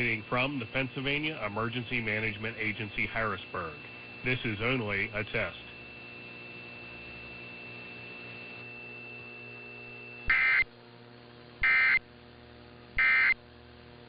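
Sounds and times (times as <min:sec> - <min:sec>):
thin high whine: 0:00.0 - 0:10.7, 0:11.6 - 0:12.1, 0:13.0 - 0:13.4
faint steady hum: 0:00.0 - 0:14.0
digital data bursts: 0:02.0 - 0:05.6, 0:10.3 - 0:10.6, 0:11.6 - 0:12.0, 0:13.0 - 0:13.4.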